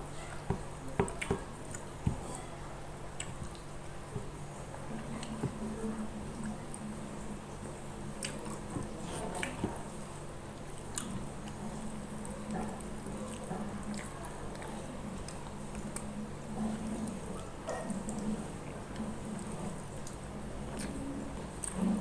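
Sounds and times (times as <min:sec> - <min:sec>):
low steady hum: 0:00.0 - 0:22.0
person chewing food: 0:00.2 - 0:06.8, 0:08.0 - 0:22.0.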